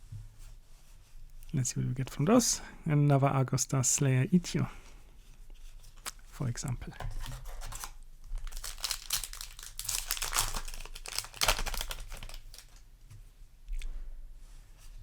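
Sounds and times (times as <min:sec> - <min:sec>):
foil wrapper crinkling and tearing: 0:07.2 - 0:12.8.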